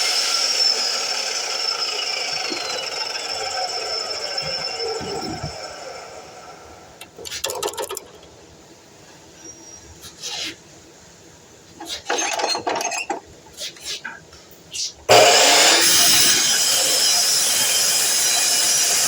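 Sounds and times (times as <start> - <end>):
saw motor spinning down: 0.0 - 6.8, 15.1 - 19.0.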